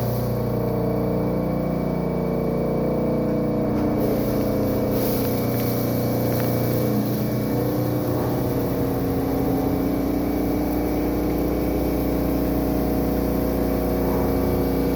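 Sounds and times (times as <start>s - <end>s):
milling machine humming: 0.0s - 14.9s.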